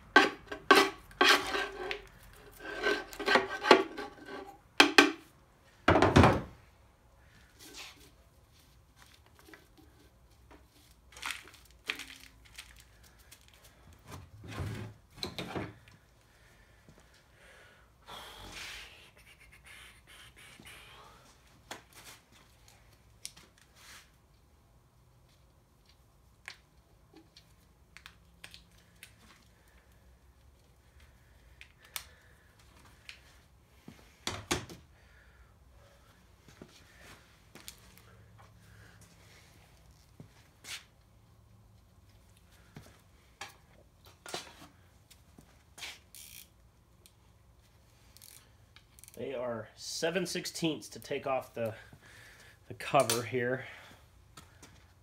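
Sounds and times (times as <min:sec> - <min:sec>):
metal scraping: 0:00.1 - 0:04.6.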